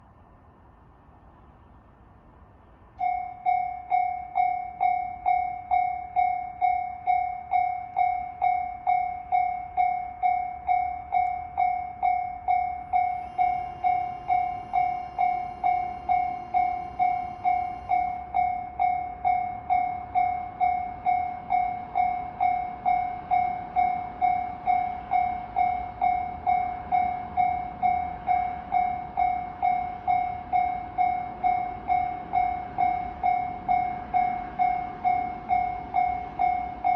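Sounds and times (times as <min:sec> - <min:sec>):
railroad crossing warning bell: 0:03.0 - 0:36.9.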